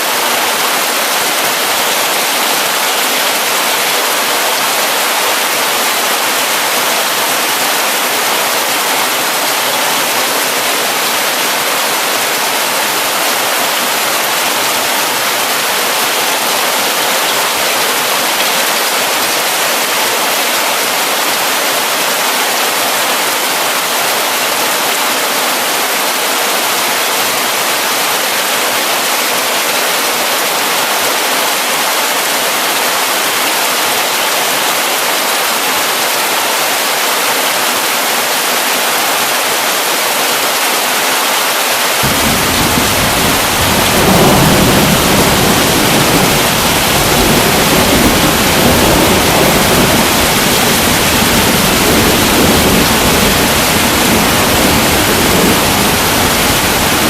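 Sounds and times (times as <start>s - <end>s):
heavy rain falling: 0.0s - 57.0s
low rumble of thunder: 42.1s - 57.0s.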